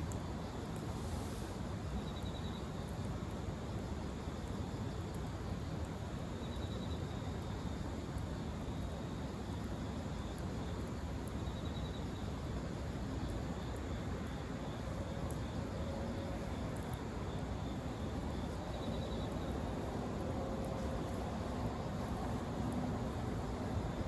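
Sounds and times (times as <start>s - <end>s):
low outdoor rumble: 12.4s - 24.0s
faint ticks: 13.2s - 15.6s, 16.5s - 17.5s.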